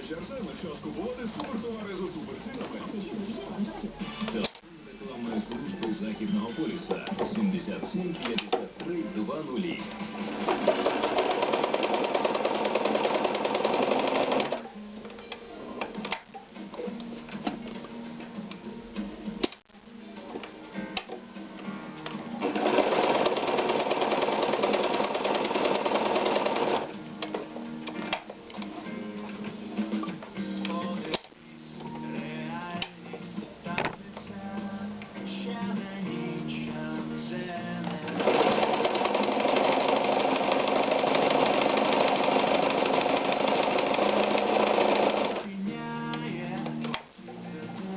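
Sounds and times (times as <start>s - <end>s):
sewing machine stitching: 10.1s - 14.7s, 22.4s - 26.9s, 38.1s - 45.5s.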